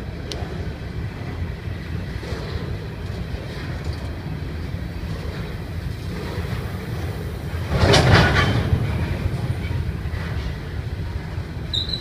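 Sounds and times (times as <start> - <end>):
train rumbling on rails: 0.0 - 12.0
train wheels clattering: 1.2 - 12.0
high-pitched brake squeal: 11.7 - 12.0.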